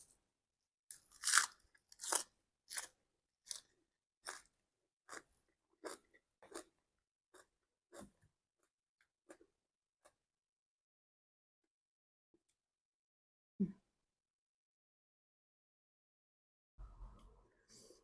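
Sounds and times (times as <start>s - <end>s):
chewing crunchy raw vegetables: 0.9s - 8.2s.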